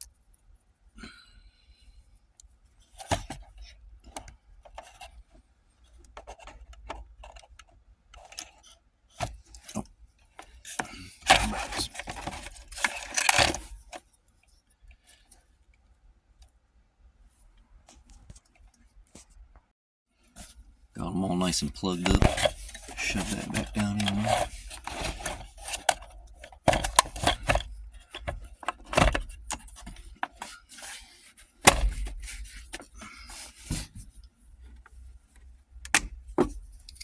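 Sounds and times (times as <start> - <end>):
rubbing and rattling: 10.6 - 14.0, 21.9 - 34.9.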